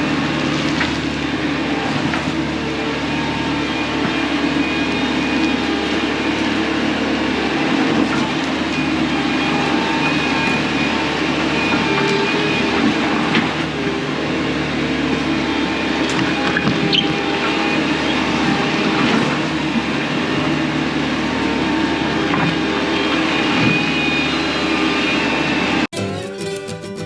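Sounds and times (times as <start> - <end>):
diesel engine running: 0.0 - 27.0
thin high tone: 21.3 - 27.0.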